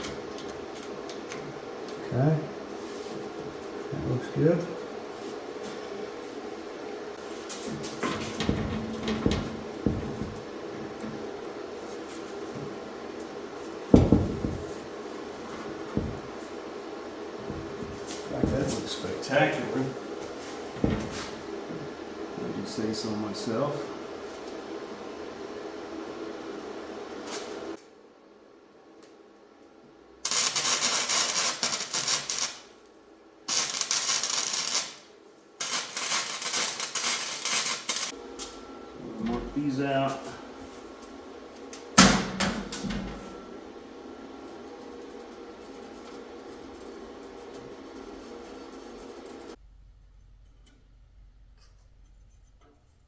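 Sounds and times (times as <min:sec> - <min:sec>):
steady low hum: 0:00.0 - 0:28.5, 0:32.9 - 0:53.0
steel parts knocking and clunking: 0:07.6 - 0:11.2
arc welding crackle: 0:30.2 - 0:32.8, 0:33.4 - 0:38.2.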